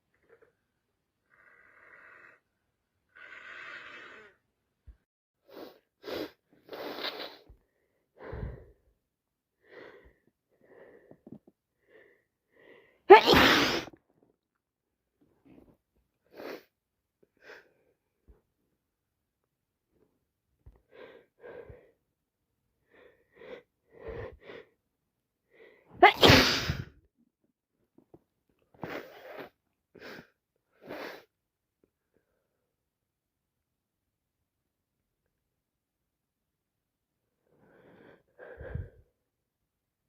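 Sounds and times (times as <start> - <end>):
person sniffing: 5.5 - 7.5, 13.1 - 13.9, 26.0 - 26.9, 30.8 - 31.3
person sneezing: 13.1 - 14.0, 26.0 - 26.9.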